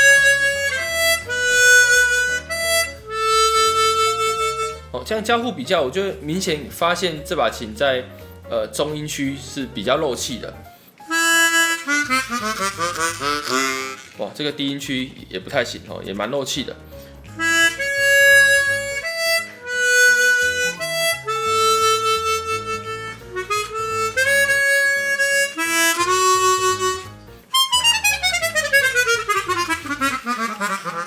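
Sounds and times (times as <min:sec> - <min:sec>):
chromatic harmonica playing: 0:00.0 - 0:05.0, 0:11.0 - 0:14.4, 0:17.3 - 0:31.0.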